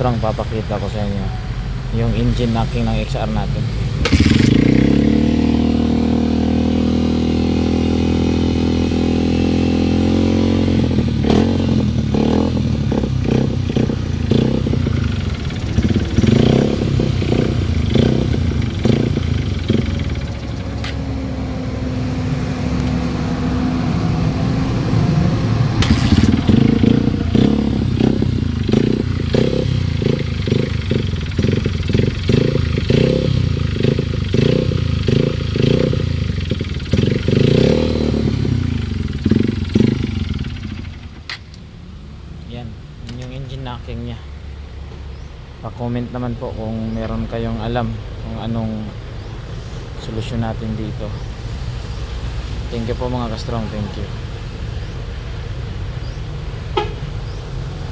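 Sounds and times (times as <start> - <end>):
motorcycle engine knocking: 4.0 - 21.2, 25.8 - 41.5.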